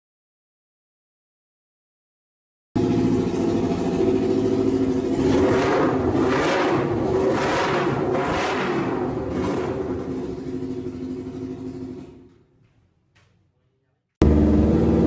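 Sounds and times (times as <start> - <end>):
motorcycle engine revving: 2.8 - 12.4, 14.2 - 15.0.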